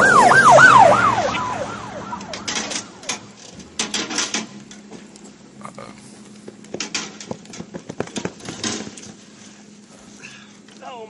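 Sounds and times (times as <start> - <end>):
siren yelping: 0.0 - 3.4
sharp clicks and knocks: 2.2 - 5.3, 6.3 - 9.2.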